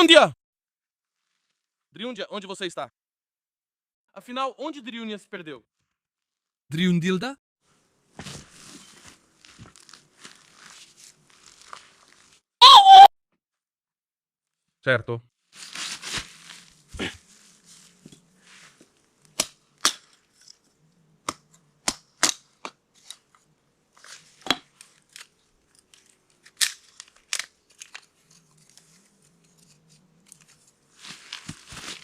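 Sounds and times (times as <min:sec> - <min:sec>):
faint rustling: 0:07.7 - 0:12.4.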